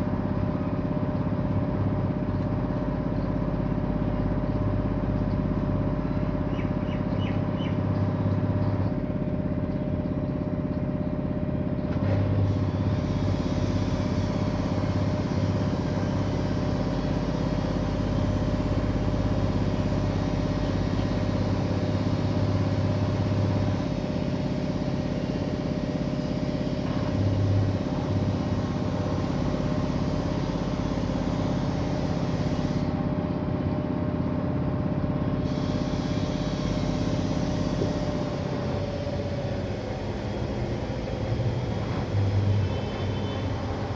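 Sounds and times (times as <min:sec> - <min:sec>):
washing machine spinning: 0:00.0 - 0:43.9.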